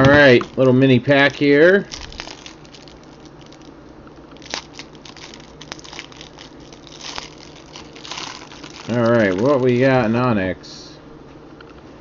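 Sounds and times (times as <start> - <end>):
wrapper crinkling and tearing: 0.4 - 3.7, 4.3 - 10.1.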